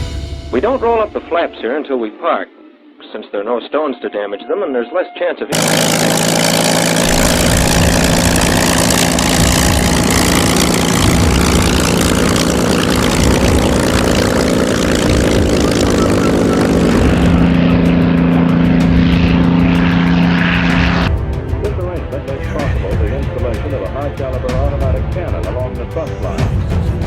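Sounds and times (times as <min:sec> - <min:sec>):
airplane engine and propeller: 0:05.5 - 0:27.0.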